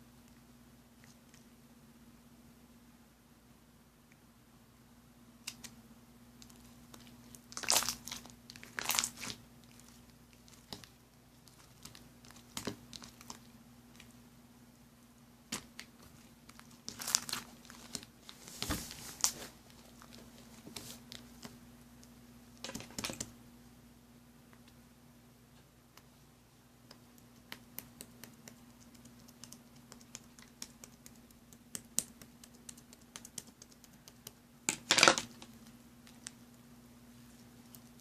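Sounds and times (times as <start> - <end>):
faint steady hum: 0.0 - 38.0
rustling and crinkling handling: 6.4 - 14.1, 15.6 - 21.6.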